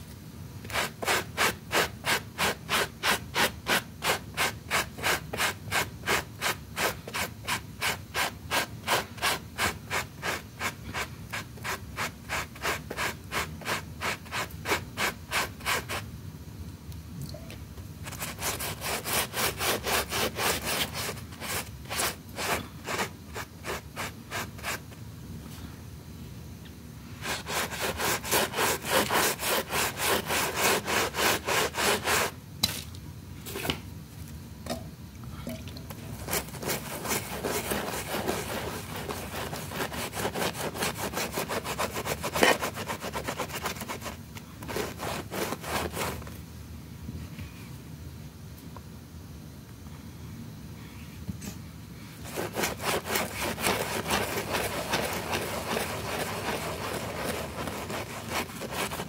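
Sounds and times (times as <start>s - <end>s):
stiff brush scrubbing a rug: 0.7s - 16.0s, 18.0s - 24.9s, 27.2s - 32.4s, 36.2s - 46.2s, 52.2s - 59.0s.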